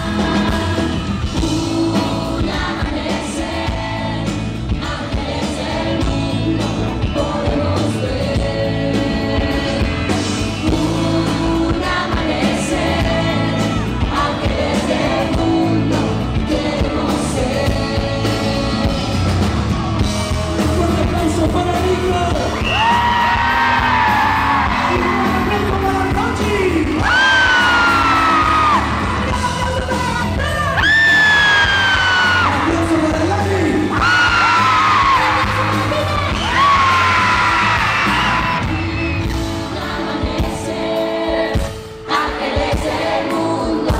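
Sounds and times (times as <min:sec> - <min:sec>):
live pop-rock band with singing: 0:00.0 - 0:43.9
audience screaming: 0:22.4 - 0:29.6, 0:30.7 - 0:39.4.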